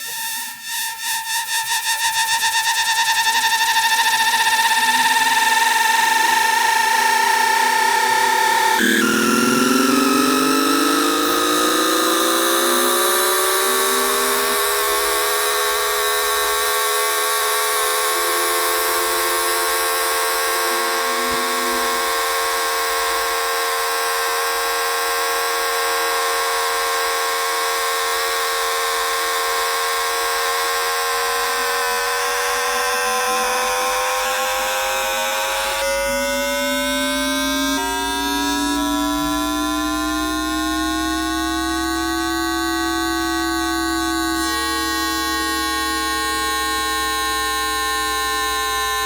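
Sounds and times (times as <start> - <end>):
rising electronic inverter tones: 3.4 - 25.4, 32.8 - 49.0.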